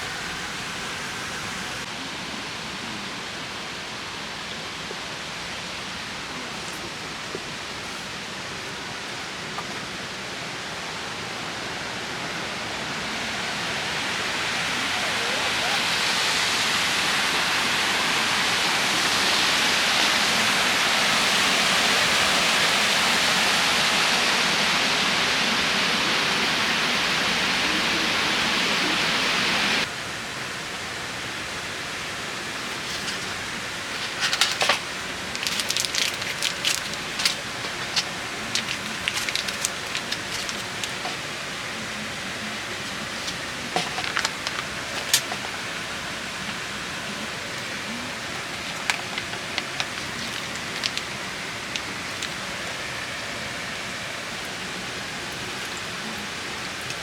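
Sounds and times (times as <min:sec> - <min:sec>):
steady rain hissing: 0:00.0 - 0:57.0
raindrops tapping on a surface: 0:32.7 - 0:41.3, 0:42.8 - 0:45.8, 0:47.5 - 0:52.6.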